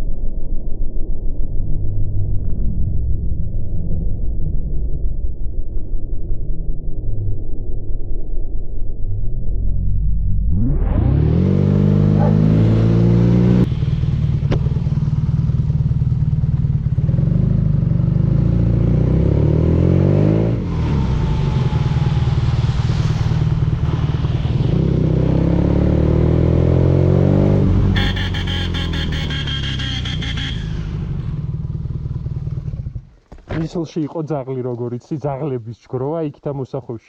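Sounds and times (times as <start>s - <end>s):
motorcycle engine accelerating hard: 10.7s - 33.2s.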